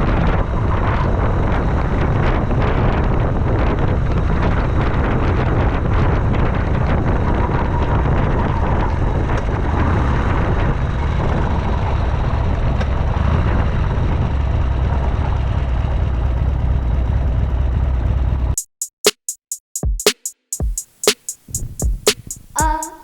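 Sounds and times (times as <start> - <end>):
wind noise on microphone: 0.0 - 15.3.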